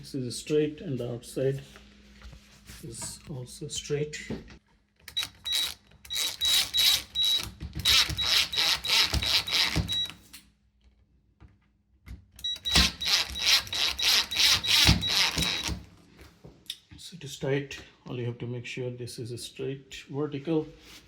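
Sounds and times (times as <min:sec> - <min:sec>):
cordless drill driving screws: 0:05.2 - 0:10.1, 0:12.7 - 0:15.8.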